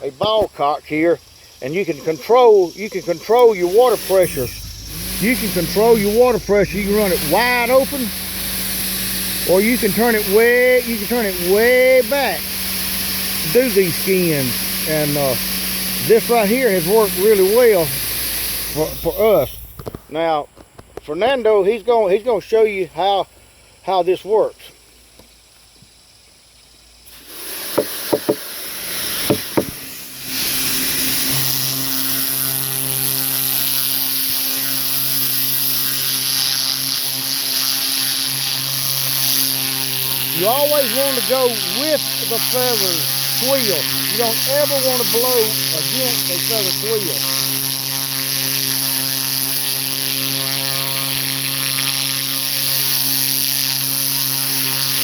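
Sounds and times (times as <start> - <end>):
pump humming: 1.2 - 20.1, 27.1 - 55.0
pressure washer spray: 1.5 - 19.9, 27.1 - 55.0
water sputtering: 1.7 - 19.8, 40.2 - 47.5.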